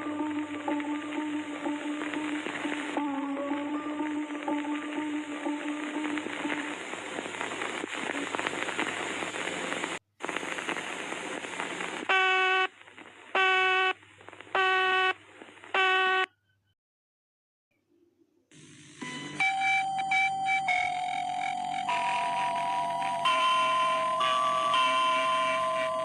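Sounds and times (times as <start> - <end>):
static-like hiss: 0.0 - 16.3, 18.6 - 26.0.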